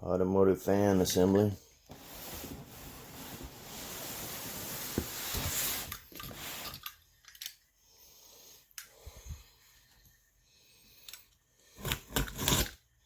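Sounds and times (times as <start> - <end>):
cardboard box rustling and scraping: 1.9 - 6.5.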